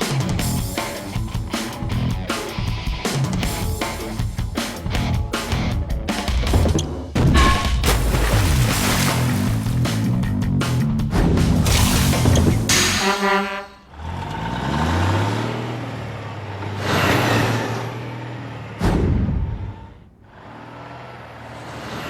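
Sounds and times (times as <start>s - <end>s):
water splash: 7.4s - 10.2s, 11.6s - 12.7s
low horn-like blare: 12.7s - 14.2s.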